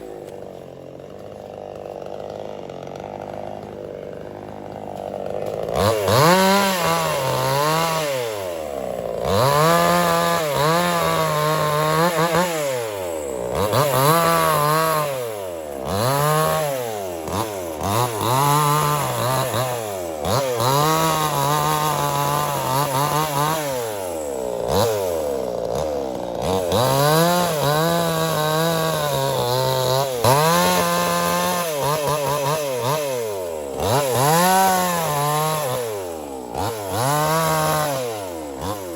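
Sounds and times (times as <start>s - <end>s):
chainsaw cutting wood: 0.0s - 38.9s.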